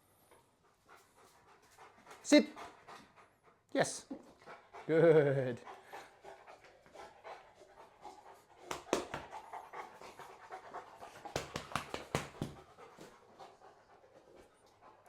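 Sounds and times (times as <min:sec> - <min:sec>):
dog panting: 0:00.0 - 0:15.0
sharp clicks or taps: 0:08.7 - 0:09.3.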